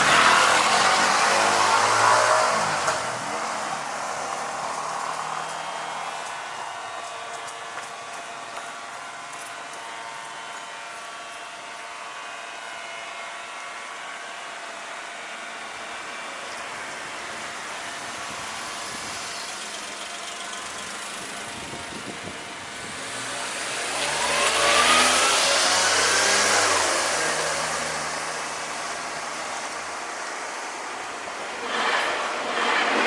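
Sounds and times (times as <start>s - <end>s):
vehicle driving past: 23.0s - 33.0s
train clattering over rails: 30.8s - 33.0s.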